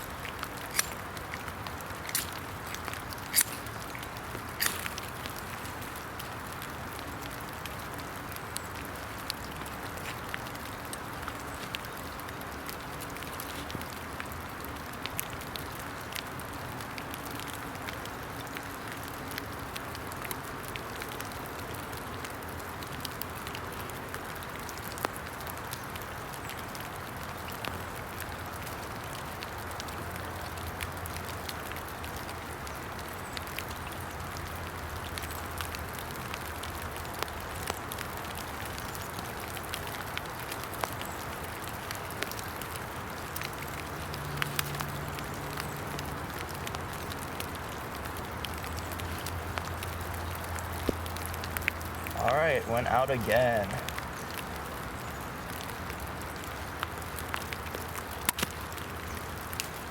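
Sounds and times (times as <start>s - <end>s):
rain pattering in woodland: 0.0s - 59.9s.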